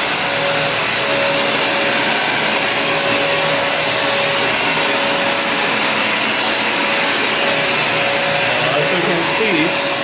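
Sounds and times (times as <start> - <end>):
carpet cleaner motor rushing: 0.0 - 10.0
steady motor whine: 0.0 - 10.0.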